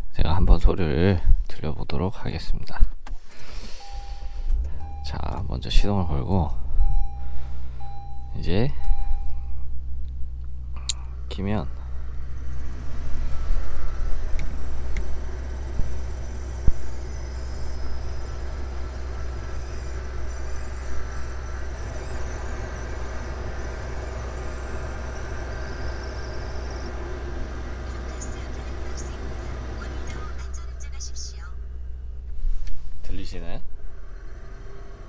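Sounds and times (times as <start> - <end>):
engine idling hum: 3.1 - 35.0
blower motor squealing: 3.3 - 9.6, 11.1 - 35.0
click: 14.3 - 15.1.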